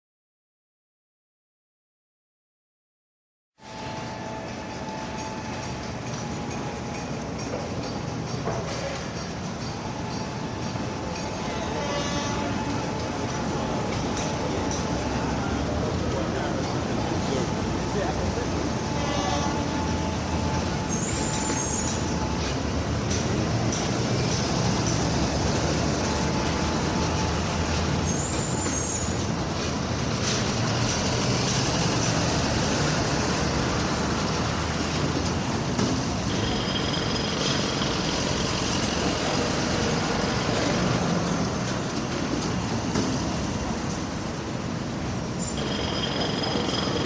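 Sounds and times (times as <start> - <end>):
traffic: 3.6 - 47.0
engines running: 12.4 - 47.0
high squeal: 18.9 - 22.6, 24.3 - 29.5, 36.3 - 38.2.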